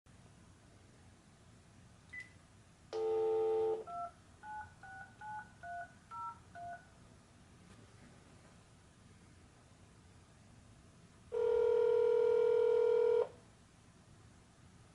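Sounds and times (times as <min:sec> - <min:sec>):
steady dial tone: 0:03.0 - 0:06.8, 0:11.4 - 0:13.3.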